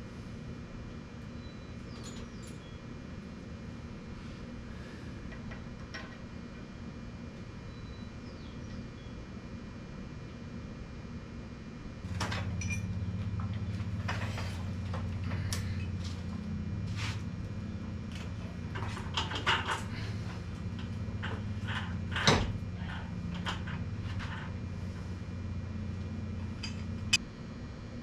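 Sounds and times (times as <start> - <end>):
steady low hum: 0.0 - 28.0
clanks of tools and metal parts: 12.1 - 16.0, 18.1 - 20.2, 20.8 - 24.6, 26.6 - 26.9.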